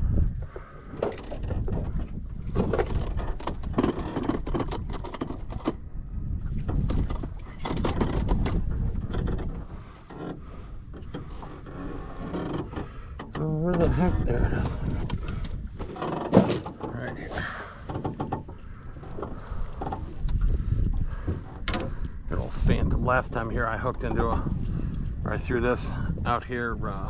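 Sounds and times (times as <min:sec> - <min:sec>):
steady low rumble: 0:00.0 - 0:00.8, 0:05.8 - 0:16.0, 0:16.6 - 0:27.0
fishing gear knocking and clattering: 0:00.6 - 0:05.9, 0:06.6 - 0:25.5.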